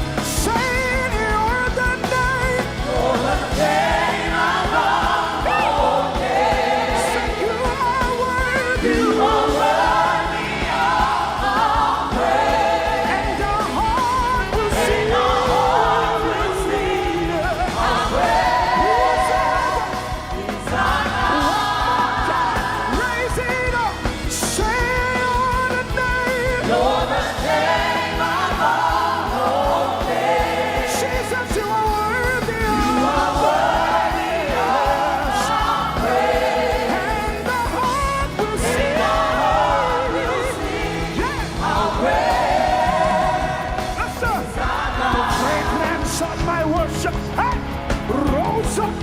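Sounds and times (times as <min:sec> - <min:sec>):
gospel singing with instruments: 0:00.0 - 0:49.0.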